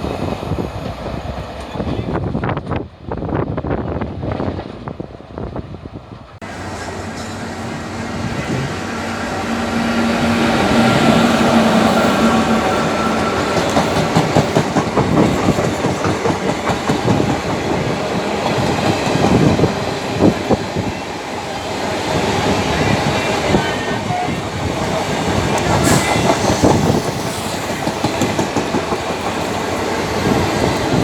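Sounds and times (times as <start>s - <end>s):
steady low locomotive tone: 6.4s - 16.0s
train wheels clattering over rail joints: 6.4s - 20.6s, 24.8s - 31.0s.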